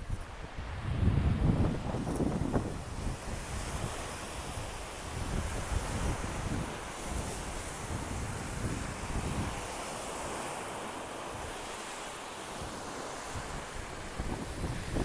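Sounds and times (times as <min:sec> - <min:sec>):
wind buffeting microphone: 0:00.0 - 0:09.6, 0:13.4 - 0:15.0
sea surf washing onto beach: 0:00.0 - 0:15.0.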